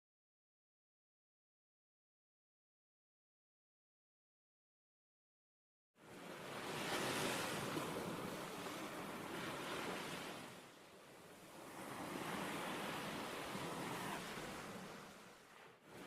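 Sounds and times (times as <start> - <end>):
sea waves washing onto shore: 6.0 - 16.0.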